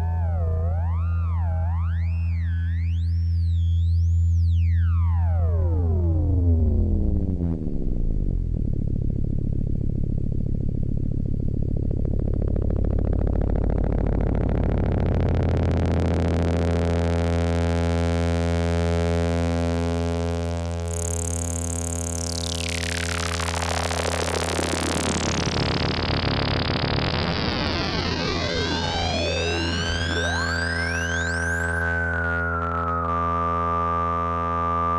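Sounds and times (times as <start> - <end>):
analog synthesizer tone: 19.8 - 34.9
falling whistling filter glide: 27.3 - 32.7.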